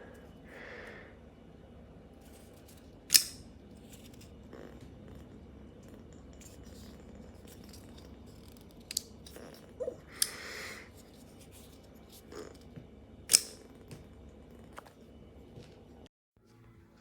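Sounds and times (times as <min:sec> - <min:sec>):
folding knife clicking: 0:03.1 - 0:03.4, 0:08.8 - 0:09.4, 0:13.3 - 0:13.6.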